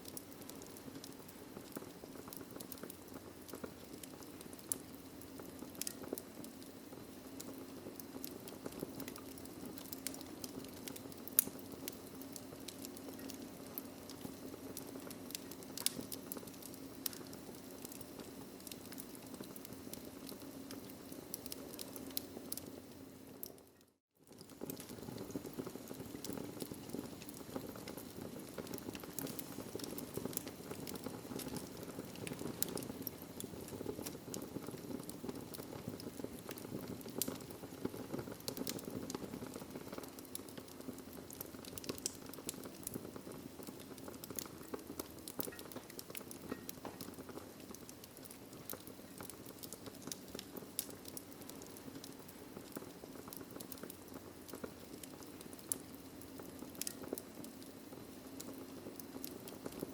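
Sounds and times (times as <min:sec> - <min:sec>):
fire crackling and popping: 0:00.0 - 0:59.9
low rush of flames: 0:24.4 - 0:59.9.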